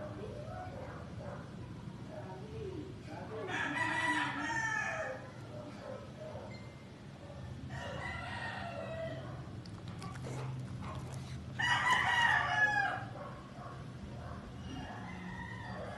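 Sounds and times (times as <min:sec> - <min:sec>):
rooster crowing: 0:03.5 - 0:05.2, 0:07.7 - 0:09.3, 0:11.6 - 0:13.2, 0:14.7 - 0:15.9.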